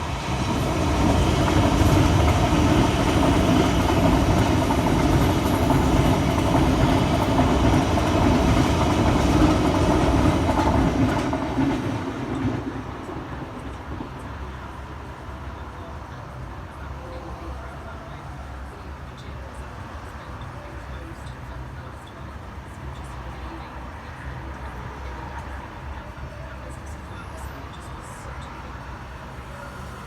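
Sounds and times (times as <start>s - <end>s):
passing train rumble: 0.0s - 30.0s.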